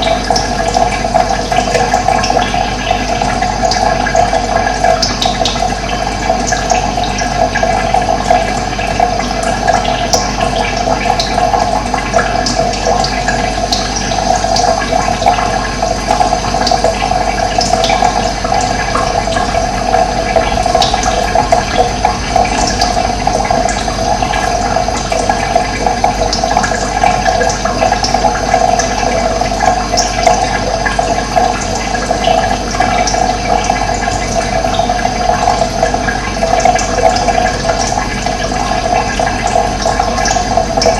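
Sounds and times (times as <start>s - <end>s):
water rushing: 16.8s - 40.9s.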